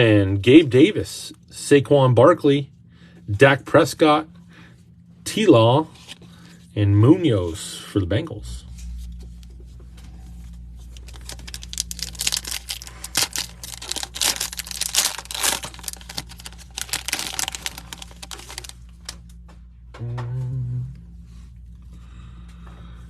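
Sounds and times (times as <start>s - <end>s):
foil wrapper tearing and crinkling: 10.8s - 19.2s.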